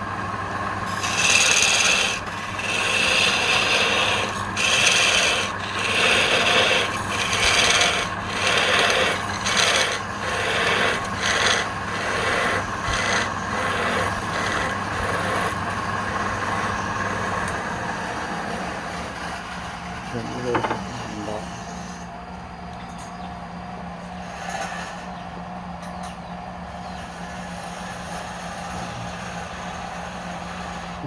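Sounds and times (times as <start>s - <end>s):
steady low hum: 0.0s - 24.2s
abrasive rubbing on wood: 0.9s - 17.5s.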